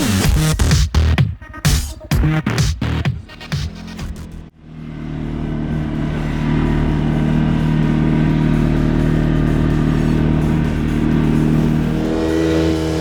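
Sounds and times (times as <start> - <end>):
music: 0.0 - 4.5, 6.7 - 13.0
atv engine running: 2.8 - 13.0.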